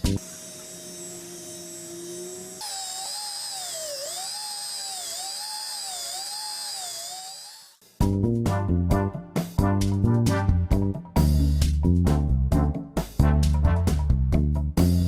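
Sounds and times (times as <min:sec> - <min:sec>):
small power tool whining: 0:00.0 - 0:07.9.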